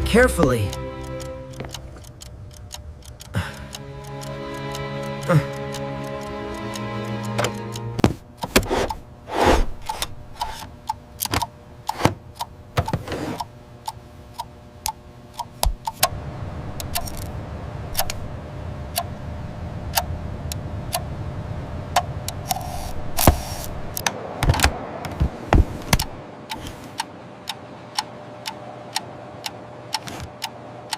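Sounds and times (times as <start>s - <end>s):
clock ticking: 0.0s - 9.0s, 9.8s - 16.1s, 19.9s - 20.1s, 25.9s - 30.9s.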